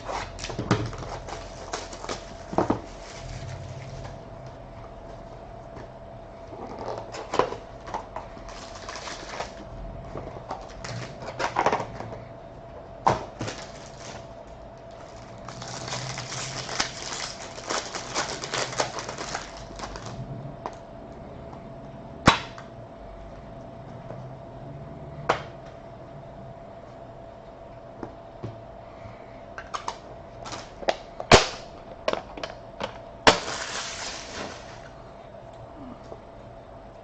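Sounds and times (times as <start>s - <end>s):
foil wrappers crinkling and tearing: 0.0s - 4.1s, 8.2s - 9.7s, 10.3s - 12.0s, 13.3s - 20.2s, 29.9s - 31.7s, 33.3s - 34.9s.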